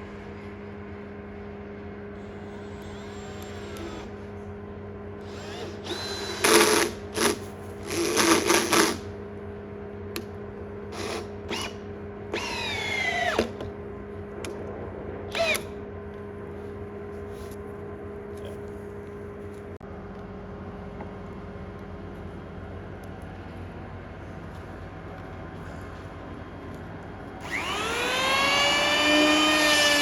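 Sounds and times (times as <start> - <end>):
steady low hum: 0.0 - 30.0
handheld power tool bursts: 5.3 - 9.1, 27.4 - 30.0.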